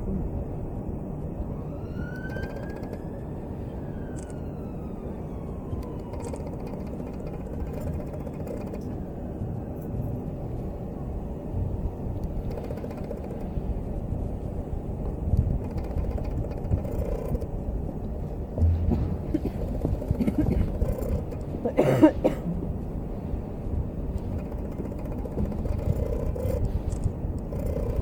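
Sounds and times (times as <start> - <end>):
low outdoor rumble: 0.0 - 28.0
faint siren wailing: 1.2 - 11.3.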